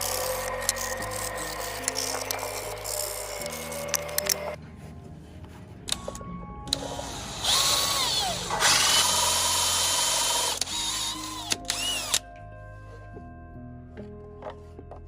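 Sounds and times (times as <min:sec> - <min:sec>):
harsh drill-like whirring: 0:00.0 - 0:04.6, 0:06.7 - 0:12.2.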